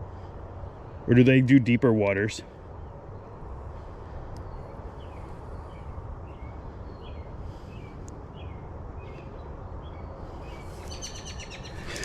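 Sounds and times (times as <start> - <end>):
low outdoor rumble: 0.0 - 12.0
bird chirping: 4.4 - 12.0.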